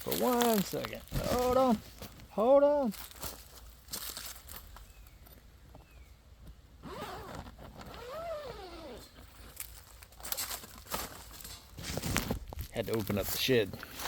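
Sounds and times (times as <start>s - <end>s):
door squeaking: 6.9s - 9.2s.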